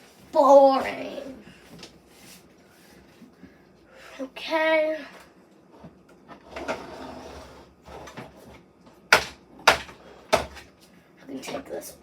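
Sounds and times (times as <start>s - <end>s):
scraping sliding rustle: 6.4s - 8.5s.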